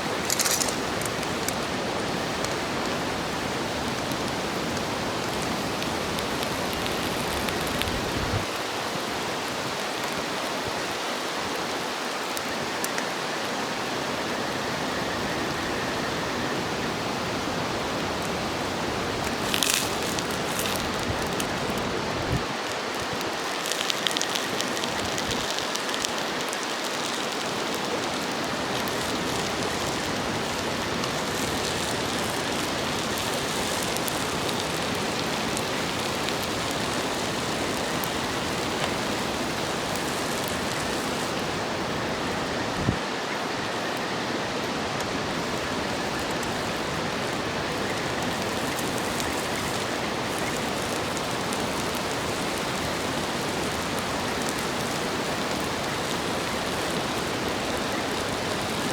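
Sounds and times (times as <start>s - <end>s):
food sizzling on a griddle: 0.1s - 43.1s, 44.7s - 58.9s
sharp clicks and scrapes: 0.3s - 1.6s.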